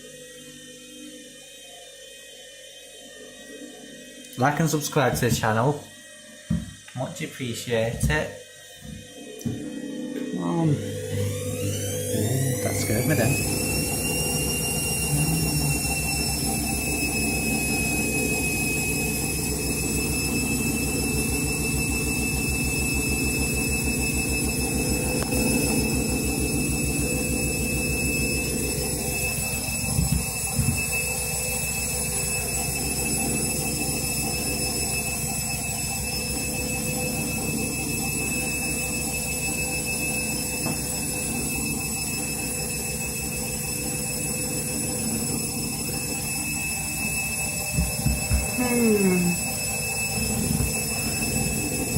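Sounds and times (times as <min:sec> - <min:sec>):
washing machine motor whine: 0:00.0 - 0:51.9.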